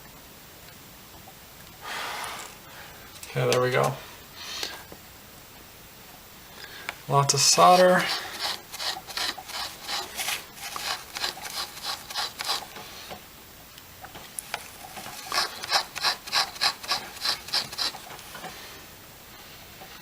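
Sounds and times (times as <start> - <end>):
soldering tip scrubbing in cleaner: 7.4 - 12.8, 14.5 - 18.5.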